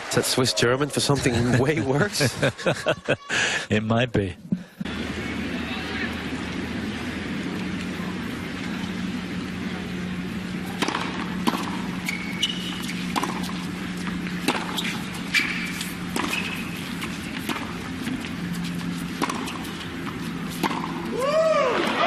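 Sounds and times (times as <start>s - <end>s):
tennis ball bouncing: 6.3s - 21.2s
tennis racket strikes: 10.6s - 21.2s
shoe squeaks on court: 12.0s - 13.7s, 14.6s - 17.4s.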